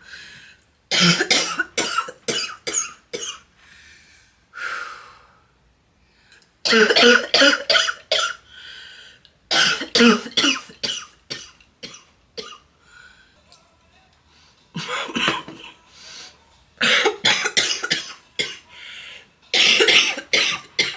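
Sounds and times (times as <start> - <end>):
girl coughing harshly: 0.9 - 3.4, 6.6 - 8.4, 9.5 - 12.6, 14.8 - 15.8, 16.8 - 18.6, 19.5 - 20.9.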